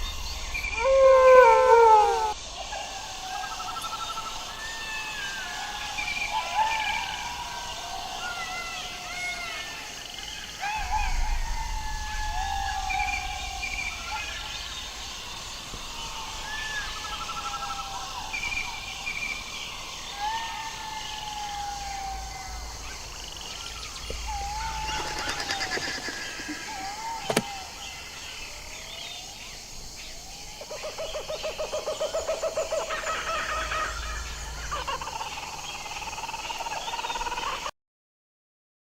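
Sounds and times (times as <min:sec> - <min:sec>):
jackals wailing: 0:00.0 - 0:03.9, 0:10.5 - 0:18.7, 0:20.1 - 0:28.4
jackals yipping: 0:22.9 - 0:27.9
sharp click: 0:27.2 - 0:27.5.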